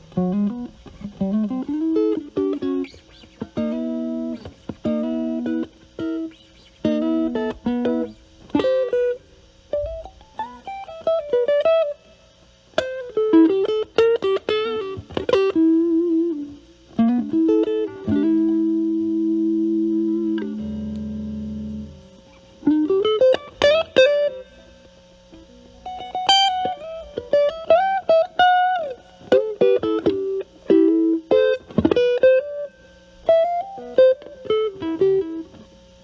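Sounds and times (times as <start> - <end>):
distorted electric guitar: 0.0 - 36.0.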